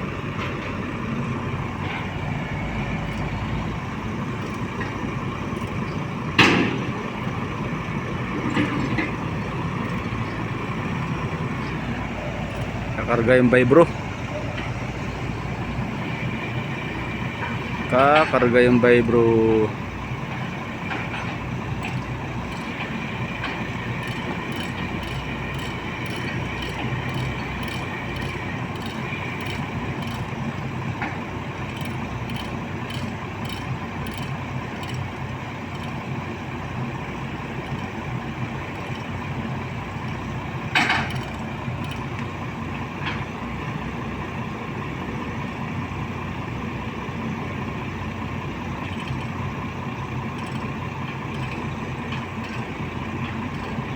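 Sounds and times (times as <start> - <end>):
diesel engine running: 0.0 - 53.9
metallic clicks and rattles: 1.7 - 15.0, 16.0 - 43.3, 48.4 - 53.9.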